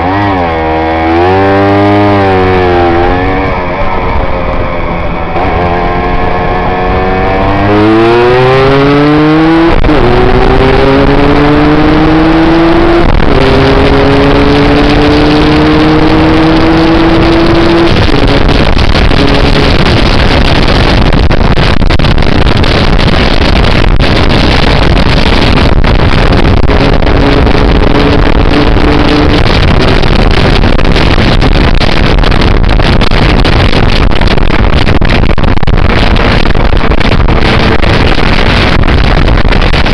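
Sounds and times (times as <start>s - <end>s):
motorcycle engine accelerating: 0.0s - 39.9s
wind rush on microphone: 0.0s - 39.9s.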